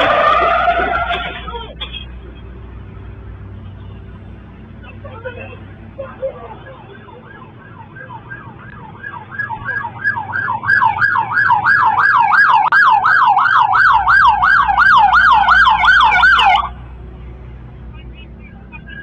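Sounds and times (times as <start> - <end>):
police siren yelping: 0.0 - 1.3, 6.0 - 16.8.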